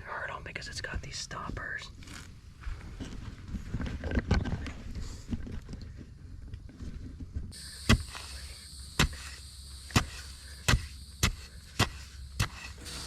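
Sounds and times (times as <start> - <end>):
insect chorus: 7.5 - 13.0.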